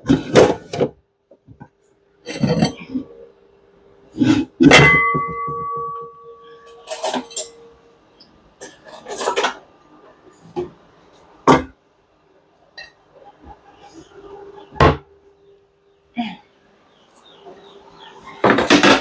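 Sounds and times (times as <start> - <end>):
kitchen dishes and pots clattering: 2.2 - 3.2, 4.2 - 7.8, 8.6 - 9.8, 12.8 - 13.9, 18.3 - 19.0.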